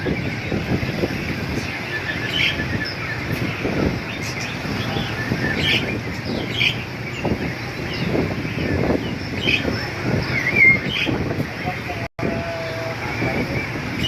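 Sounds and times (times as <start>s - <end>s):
caged songbirds chirping: 0.0s - 14.0s.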